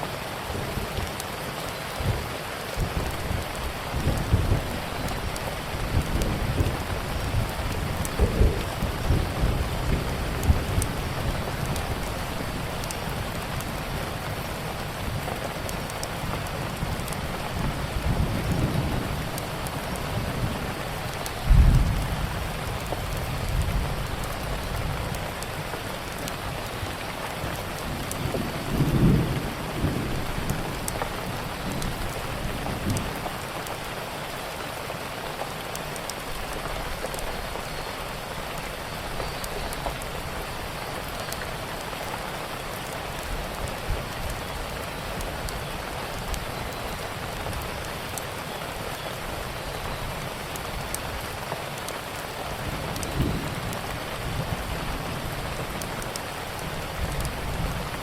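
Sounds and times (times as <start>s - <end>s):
heavy rain: 0.0s - 58.0s
wood fire crackling: 2.7s - 18.0s
thunder rumbling: 2.8s - 15.3s.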